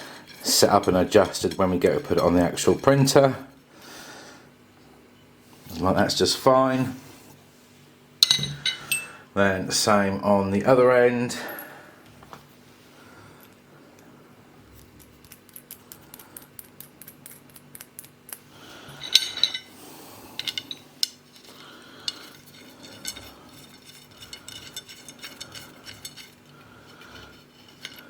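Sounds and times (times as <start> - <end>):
small metal parts clinking: 16.4 - 28.0
metallic clatter: 19.0 - 19.7, 20.4 - 28.0.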